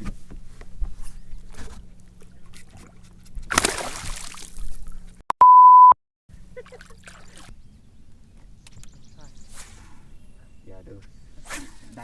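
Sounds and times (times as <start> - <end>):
water sloshing around boat: 0.0 - 5.2, 6.5 - 7.6
water splash: 3.5 - 4.7.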